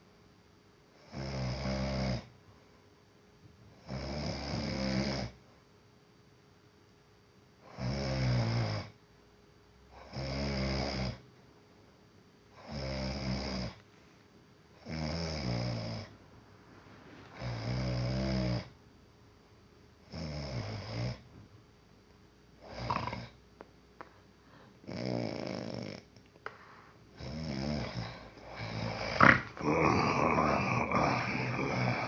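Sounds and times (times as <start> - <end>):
person snoring: 1.1 - 2.3, 3.8 - 5.4, 10.0 - 11.2, 12.6 - 13.8, 14.8 - 16.1, 16.8 - 18.8, 22.6 - 23.4, 24.8 - 26.1, 27.2 - 32.0
quiet breaths: 12.5 - 18.8, 22.6 - 32.0.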